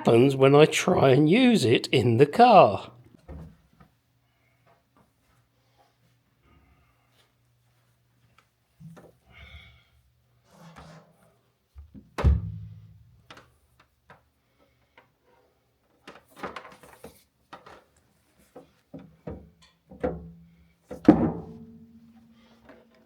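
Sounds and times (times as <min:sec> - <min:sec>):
objects knocking and thumping: 0:18.6 - 0:23.0.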